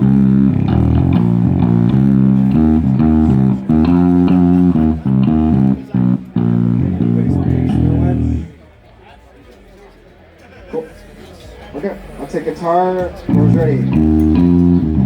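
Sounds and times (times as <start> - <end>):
electric bass guitar notes: 0.0 - 8.6, 13.3 - 15.0.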